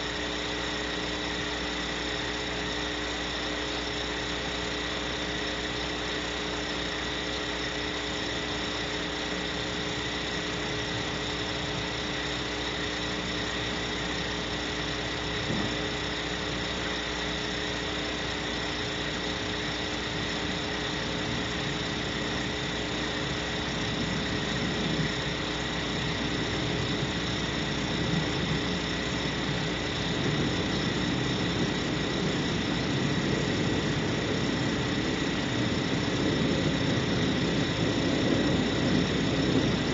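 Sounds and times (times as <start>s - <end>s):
electronic hum tones: 0.0s - 39.9s
steady hiss: 0.0s - 39.9s
low rumble: 20.1s - 39.9s.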